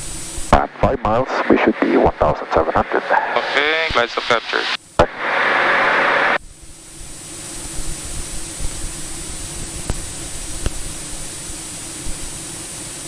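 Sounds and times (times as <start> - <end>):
faint steady hum: 0.0 - 13.0
intercom and cabin hiss: 0.0 - 13.0
radio static burst: 0.4 - 6.4.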